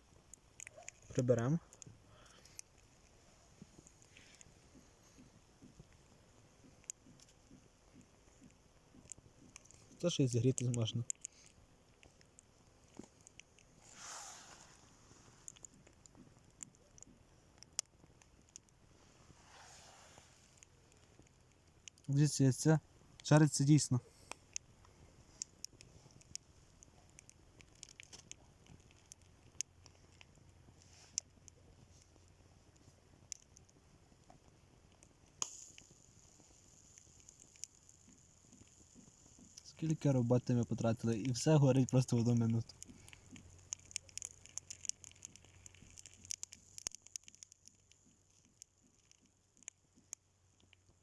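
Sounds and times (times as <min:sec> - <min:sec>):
burning matches crackling and popping: 0:00.0 - 0:51.0.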